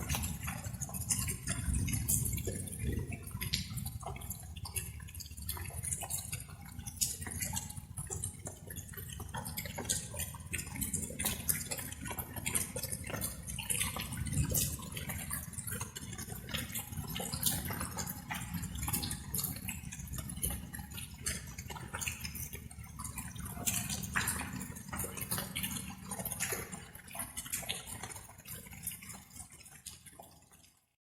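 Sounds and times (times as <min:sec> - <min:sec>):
raindrops falling and dripping: 0:00.0 - 0:30.9.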